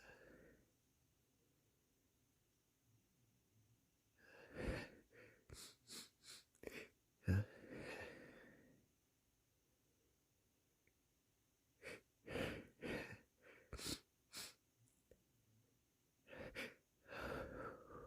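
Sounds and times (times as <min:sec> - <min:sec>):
person breathing: 0:00.0 - 0:00.6, 0:04.2 - 0:08.8, 0:11.8 - 0:14.6, 0:16.3 - 0:18.0
person sniffing: 0:05.5 - 0:06.9, 0:11.9 - 0:14.6.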